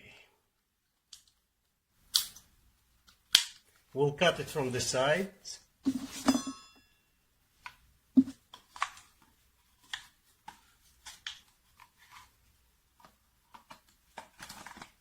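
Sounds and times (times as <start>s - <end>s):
metallic ring: 6.1s - 7.2s.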